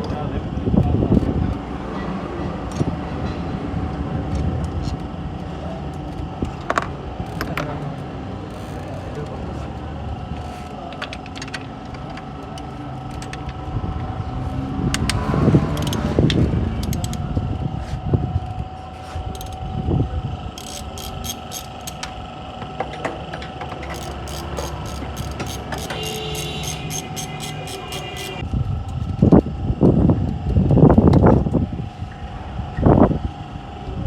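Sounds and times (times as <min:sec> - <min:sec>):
car engine running: 0:02.2 - 0:28.4
sharp metallic clicks: 0:14.9 - 0:17.2, 0:20.6 - 0:22.2, 0:22.8 - 0:28.4.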